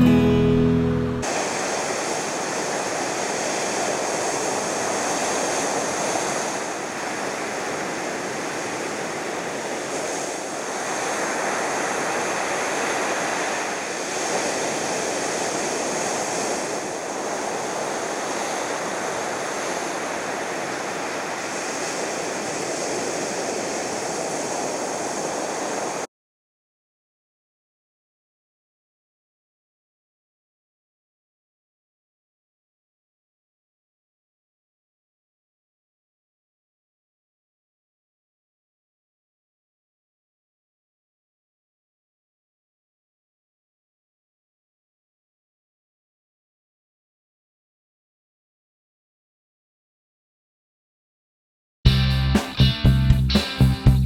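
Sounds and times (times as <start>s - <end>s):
ocean waves washing: 0.0s - 26.1s, 51.9s - 54.0s.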